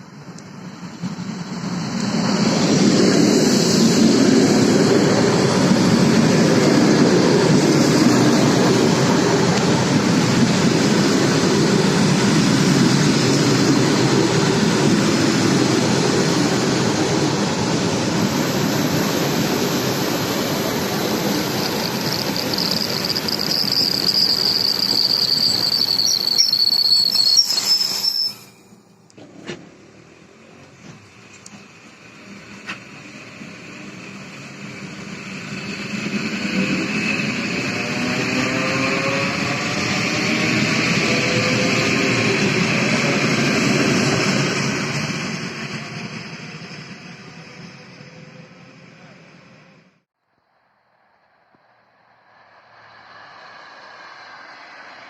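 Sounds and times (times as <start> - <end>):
train wheels on track: 0.0 - 50.0
high wheel squeal: 20.2 - 28.9.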